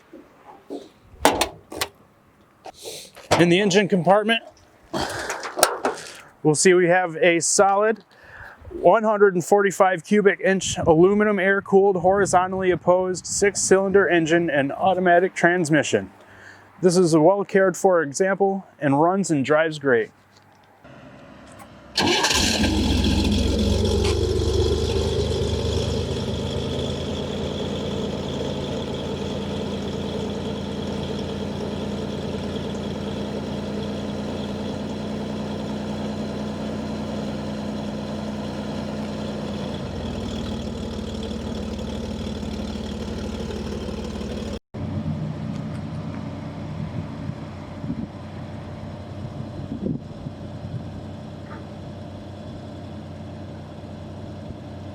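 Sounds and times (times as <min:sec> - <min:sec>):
car engine starting and idling: 0:00.0 - 0:02.6, 0:03.2 - 0:03.8, 0:05.0 - 0:06.4, 0:20.9 - 0:49.7.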